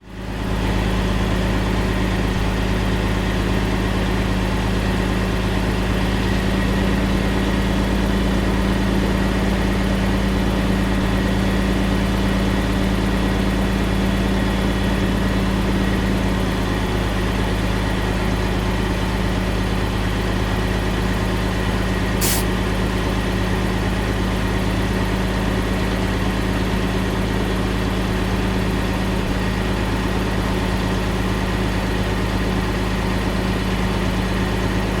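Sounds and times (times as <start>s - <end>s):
truck engine idling: 0.0s - 35.0s
air hiss: 22.2s - 22.5s.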